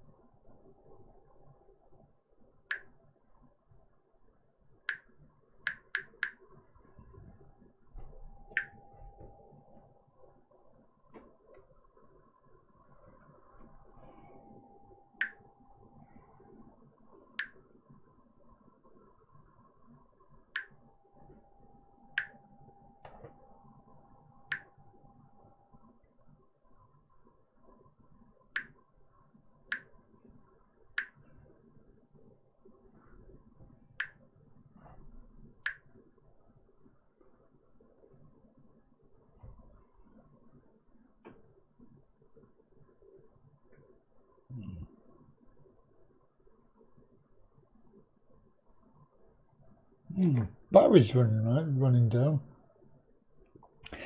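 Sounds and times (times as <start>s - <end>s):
faint steady hum: 0.0s - 54.0s
faint steady tone: 0.0s - 54.0s.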